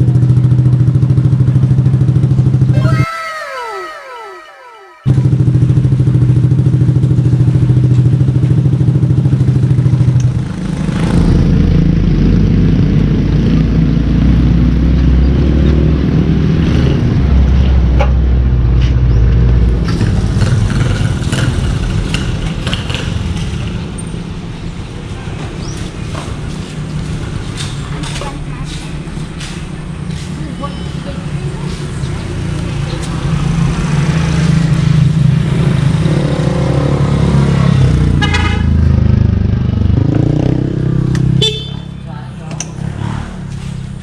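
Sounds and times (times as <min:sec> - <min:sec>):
loud motorcycle exhaust: 0:35.0 - 0:42.0.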